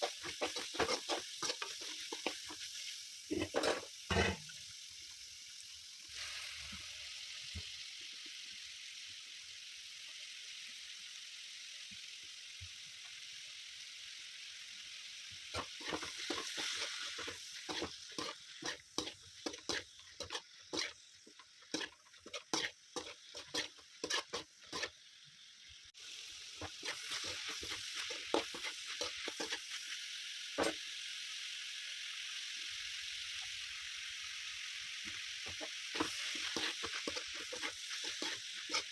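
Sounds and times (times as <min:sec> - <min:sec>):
spatula knocking and scraping pan: 0:00.0 - 0:02.7, 0:03.3 - 0:04.5, 0:15.6 - 0:24.9, 0:26.6 - 0:29.6, 0:35.4 - 0:38.9
food sizzling in a pan: 0:00.0 - 0:38.9.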